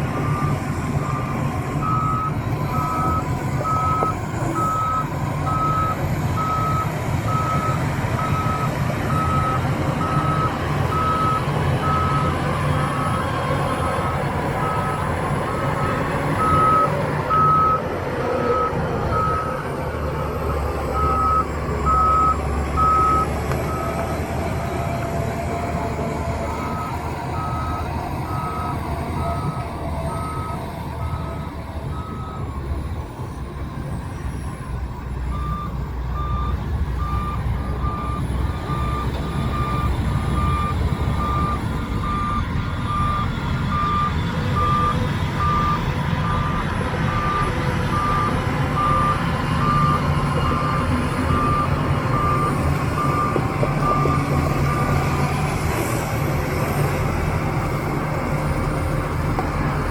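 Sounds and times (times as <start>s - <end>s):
diesel engines rumbling: 0.0s - 59.9s
backup alarm beeping: 20.5s - 24.1s.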